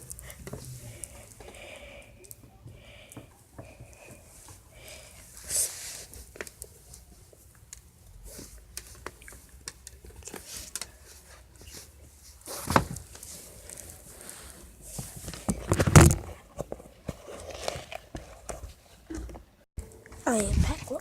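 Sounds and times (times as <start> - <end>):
rustling: 3.8 - 19.2.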